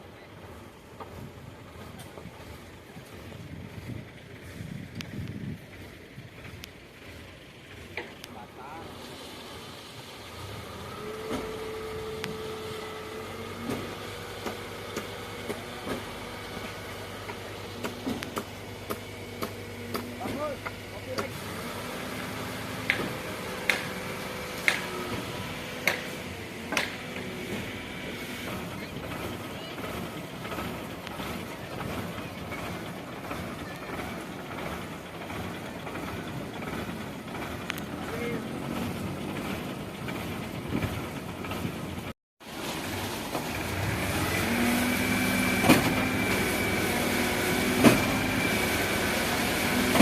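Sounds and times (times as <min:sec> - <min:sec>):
concrete pump humming: 0:00.0 - 0:50.0
sharp clicks and knocks: 0:13.6 - 0:21.4, 0:22.7 - 0:27.7.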